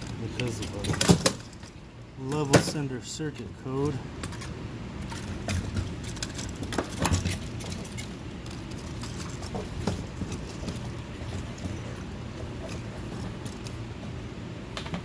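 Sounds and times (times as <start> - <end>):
steady low hum: 0.0 - 15.0
metal parts clicking and knocking: 4.2 - 13.8.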